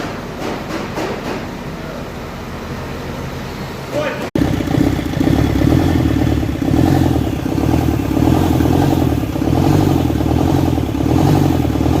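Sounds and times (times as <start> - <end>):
diesel engine knocking: 4.4 - 12.0.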